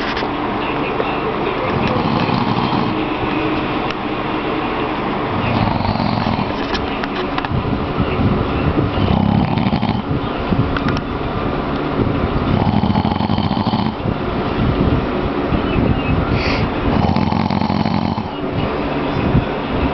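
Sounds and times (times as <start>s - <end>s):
man snoring loudly: 1.7s - 3.0s, 5.4s - 6.6s, 9.1s - 10.1s, 12.5s - 14.0s, 16.9s - 18.4s.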